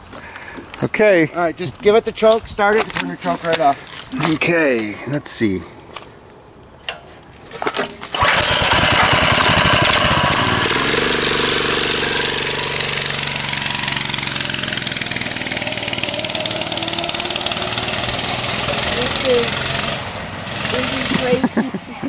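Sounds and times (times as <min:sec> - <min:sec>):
small gasoline engine starting and idling: 0:08.1 - 0:21.5.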